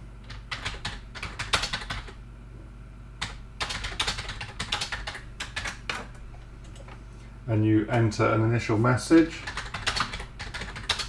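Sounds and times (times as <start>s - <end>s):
computer keyboard typing: 0.2s - 2.2s, 3.2s - 7.0s, 9.4s - 11.0s.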